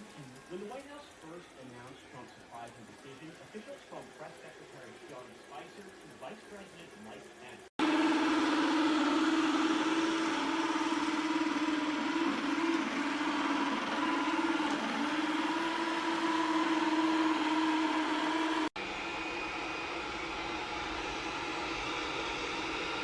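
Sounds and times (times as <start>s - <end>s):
machine engine humming: 7.8s - 18.8s.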